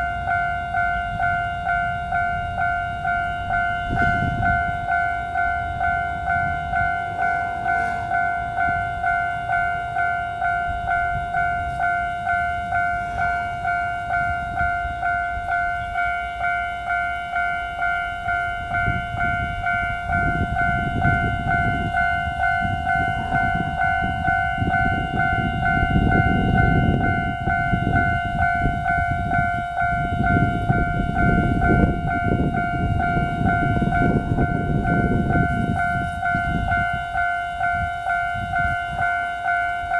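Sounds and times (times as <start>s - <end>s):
diesel train engines: 0.0s - 39.9s
level crossing bell ringing: 0.0s - 39.9s.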